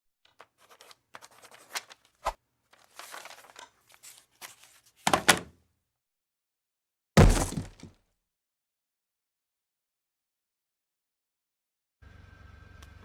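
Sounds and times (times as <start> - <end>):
double thud: 7.2 - 7.9
sharp knock: 7.2 - 7.9.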